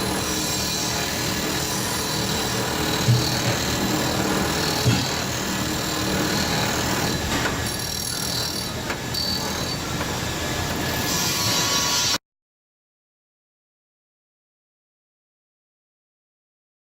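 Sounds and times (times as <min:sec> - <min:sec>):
wheel grinder grinding metal: 0:00.0 - 0:12.1
sharp knocks: 0:03.0 - 0:03.8.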